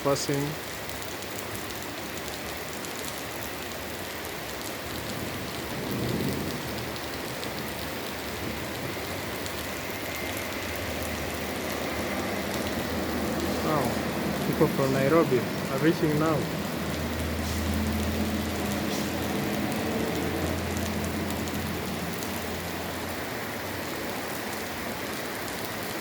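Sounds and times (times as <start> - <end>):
heavy rain: 0.0 - 26.0.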